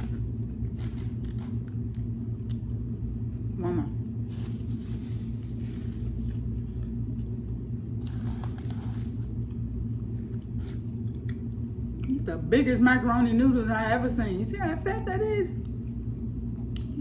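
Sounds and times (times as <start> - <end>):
steady low rumble: 0.0 - 17.0
rustling noise: 4.3 - 6.5.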